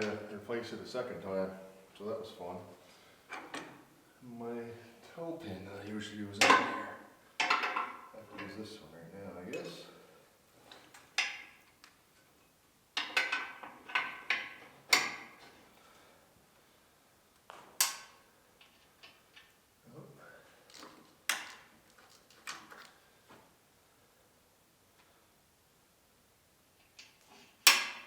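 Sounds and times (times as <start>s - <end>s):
metal clanks of hitch pins: 17.8s - 18.2s.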